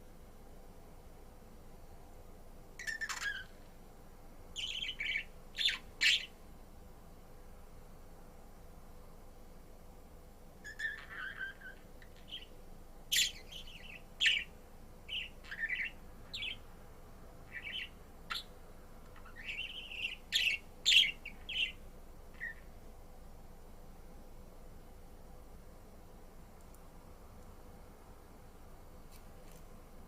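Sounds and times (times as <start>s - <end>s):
budgerigar chirping and warbling: 2.8s - 3.6s, 4.6s - 6.3s, 10.6s - 12.5s, 13.1s - 14.5s, 15.1s - 16.6s, 17.5s - 18.5s, 19.2s - 21.8s, 22.4s - 22.6s.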